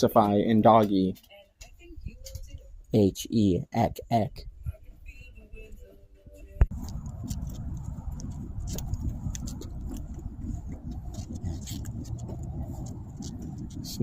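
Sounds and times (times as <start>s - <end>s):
low rumbling noise: 6.6s - 14.0s.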